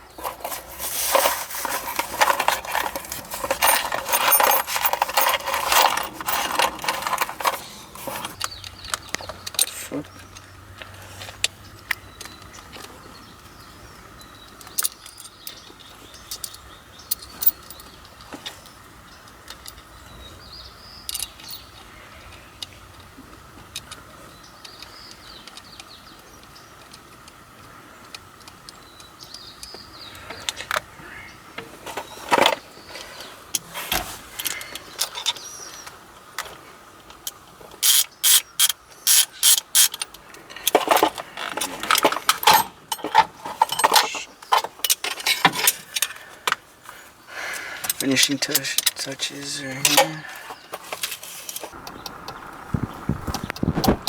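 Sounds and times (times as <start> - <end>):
metallic clinks of hand tools: 1.6 - 7.6.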